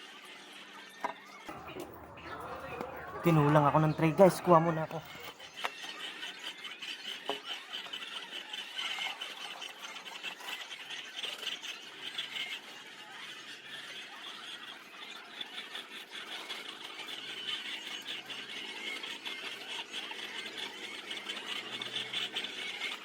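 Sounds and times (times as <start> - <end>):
hens calling: 1.5 - 5.6.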